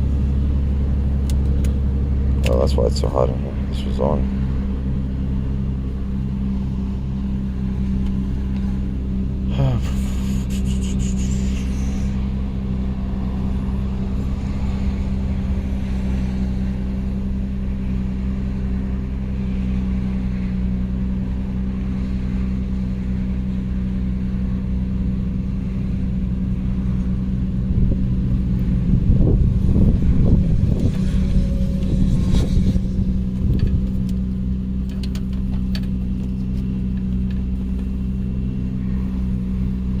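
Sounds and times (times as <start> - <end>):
car engine idling: 0.0 - 40.0.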